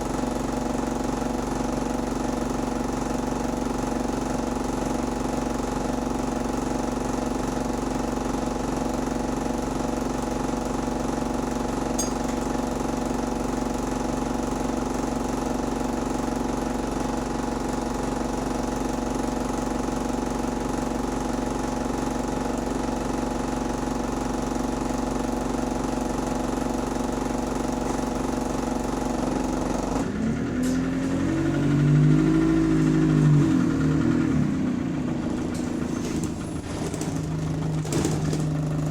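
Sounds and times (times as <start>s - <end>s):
bus engine droning and revving: 25.6s - 38.9s.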